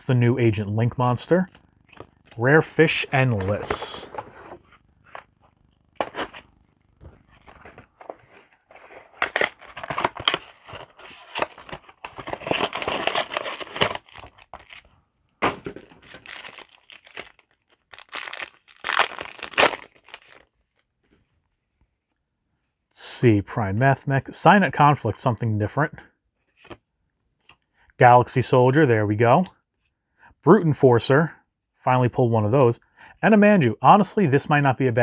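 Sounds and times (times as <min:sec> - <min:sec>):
cards being handled: 0:01.5 - 0:20.4
foil wrapper crinkling and tearing: 0:07.0 - 0:14.9, 0:15.5 - 0:20.5.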